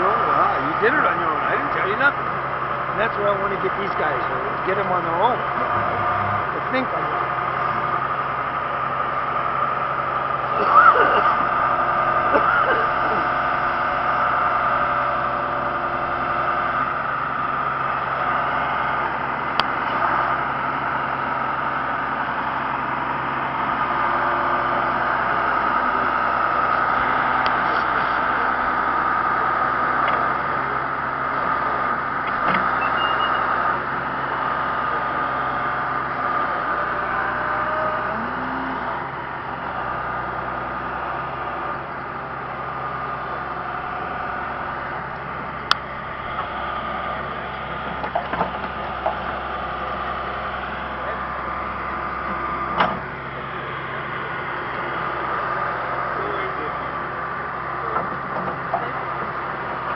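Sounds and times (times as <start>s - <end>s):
diesel engine and hydraulics: 0.0s - 59.9s
high whine: 4.5s - 8.2s.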